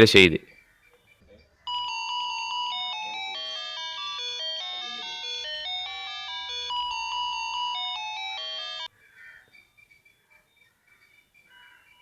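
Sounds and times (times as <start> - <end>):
doorbell chime tune: 1.7 - 8.9.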